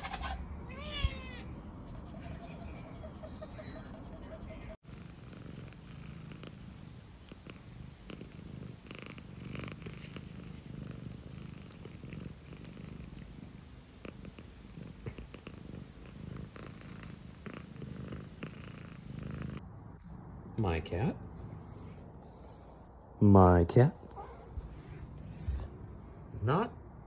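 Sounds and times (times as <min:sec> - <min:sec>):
cat purring: 0:02.3 - 0:19.7.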